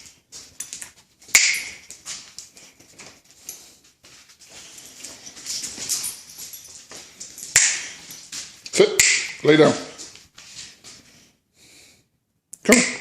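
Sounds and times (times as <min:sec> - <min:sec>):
dog claws clicking on floor: 0:00.0 - 0:11.0
finger snap: 0:01.4 - 0:01.7, 0:07.6 - 0:07.9, 0:09.0 - 0:09.4.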